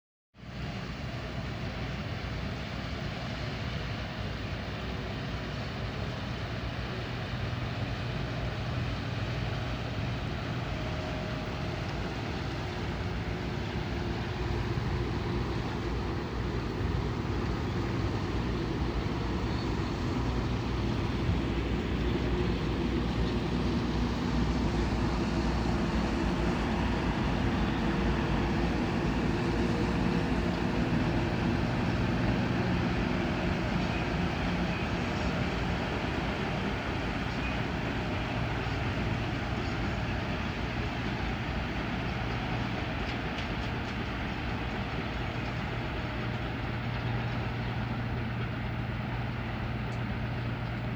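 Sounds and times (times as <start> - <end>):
ship engine drone: 0.4 - 50.9.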